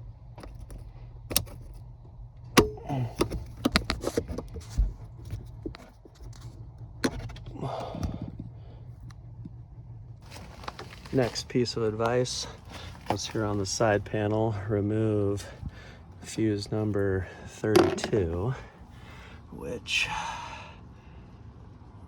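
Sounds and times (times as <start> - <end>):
steady low hum: 0.0 - 22.0
tools clicking and rattling: 17.8 - 18.2.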